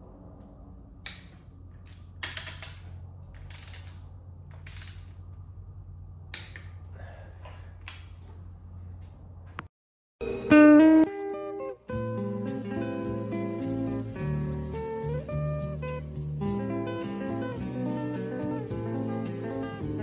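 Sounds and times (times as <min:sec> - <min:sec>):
low hum: 0:00.0 - 0:09.7
torque wrench clicking: 0:01.0 - 0:05.2.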